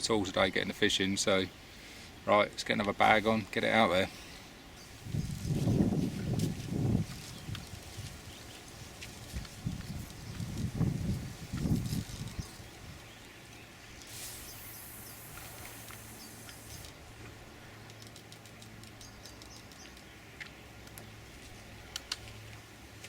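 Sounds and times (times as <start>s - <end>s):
small bird chirping: 11.6s - 16.9s, 19.0s - 20.2s
hiss: 14.0s - 17.0s
light clicks and ticks: 17.8s - 22.6s.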